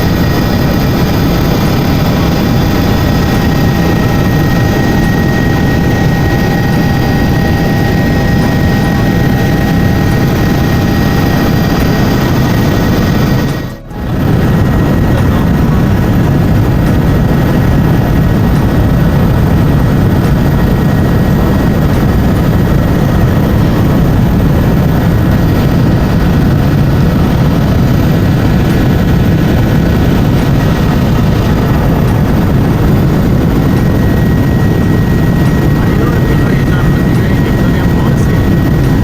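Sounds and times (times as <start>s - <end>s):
helicopter rotor and engine: 0.0s - 39.0s.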